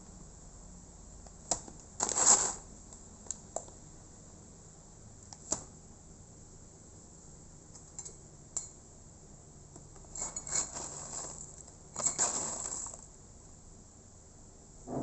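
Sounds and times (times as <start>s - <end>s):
rough handling noise: 10.2s - 13.1s.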